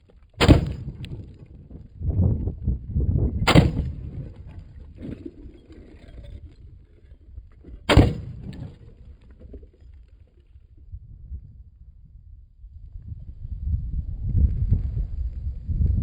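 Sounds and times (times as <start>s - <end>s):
rifle shots: 0.4s - 1.4s, 3.5s - 4.6s, 7.9s - 8.8s.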